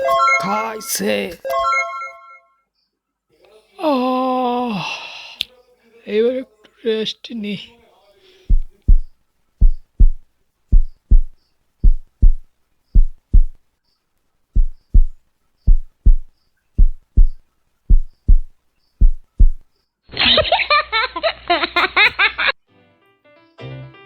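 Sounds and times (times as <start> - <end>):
heartbeat thumps: 8.4 - 13.6, 14.6 - 19.6.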